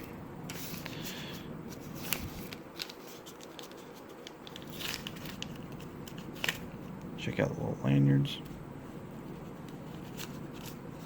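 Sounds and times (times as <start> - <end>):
packaging rustling: 0.0 - 6.9.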